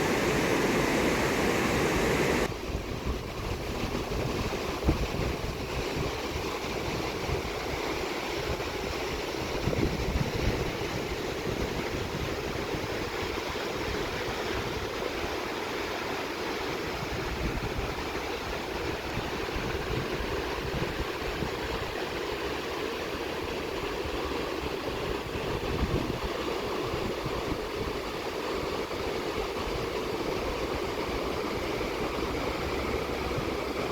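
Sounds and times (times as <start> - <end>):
fast-flowing stream rushing: 0.0 - 2.5, 6.3 - 33.9
wind buffeting microphone: 0.0 - 7.7, 8.4 - 15.0, 25.0 - 28.0.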